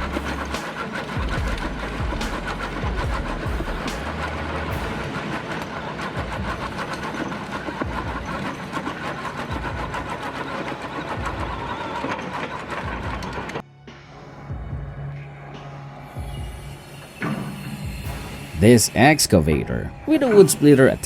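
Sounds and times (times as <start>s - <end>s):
machinery crackling and grinding wood: 0.0s - 13.6s.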